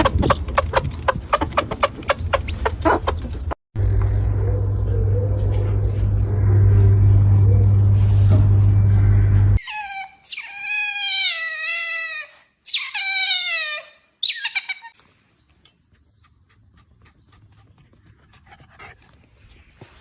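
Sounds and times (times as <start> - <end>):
low rumbling hum: 0.0 - 9.6
high-pitched wavering animal cries: 9.6 - 14.8.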